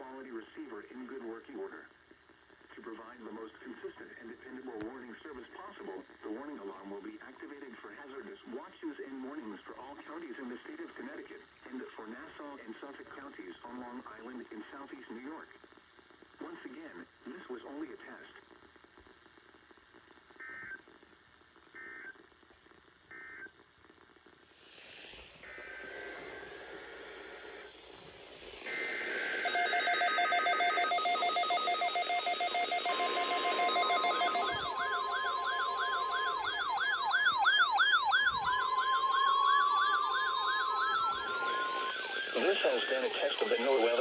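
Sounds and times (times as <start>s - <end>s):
layered steady electronic tones: 25.3s - 44.0s
warbling siren sweeps: 28.6s - 44.0s
two-pitched electronic data bursts: 28.7s - 37.7s, 38.4s - 44.0s.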